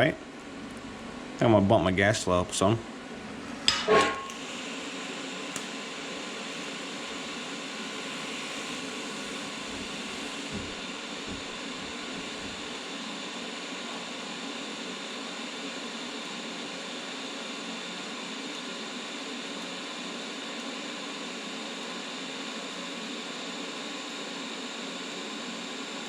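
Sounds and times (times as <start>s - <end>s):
welding arc hissing: 4.2s - 13.2s.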